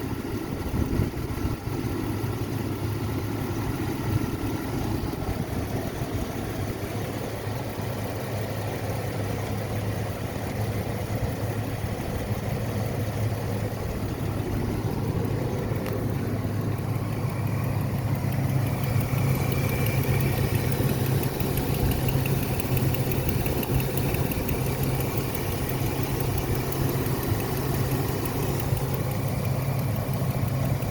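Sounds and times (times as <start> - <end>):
engine idling: 0.0 - 30.9
fast even clicking: 13.7 - 30.9.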